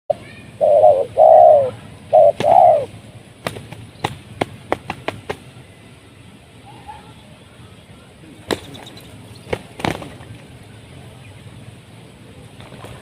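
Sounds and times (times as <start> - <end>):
dove cooing: 0.6 - 2.9.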